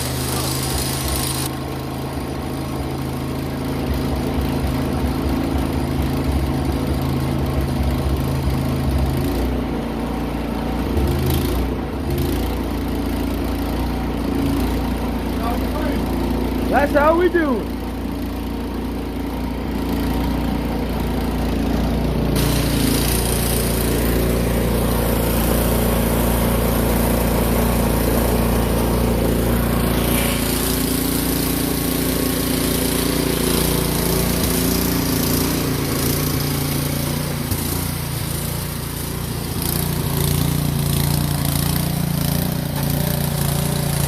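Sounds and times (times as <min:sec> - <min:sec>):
hiss: 0:00.0 - 0:01.5, 0:22.4 - 0:29.1, 0:29.9 - 0:41.4
snowblower engine running: 0:00.0 - 0:44.0.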